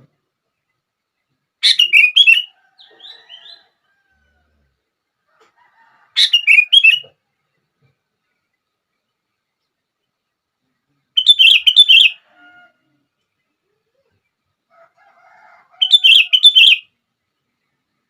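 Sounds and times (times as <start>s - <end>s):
bulbul singing: 1.6s - 3.6s, 6.2s - 7.2s, 11.1s - 12.2s, 15.8s - 16.9s.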